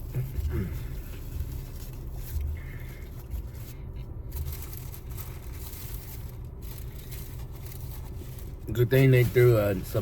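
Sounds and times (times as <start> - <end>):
steady low hum: 0.0 - 10.0
paper wrappers rustling: 0.1 - 10.0.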